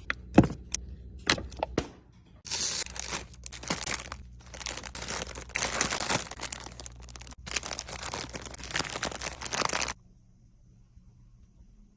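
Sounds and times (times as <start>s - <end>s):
plastic packaging crinkling: 2.5s - 10.0s.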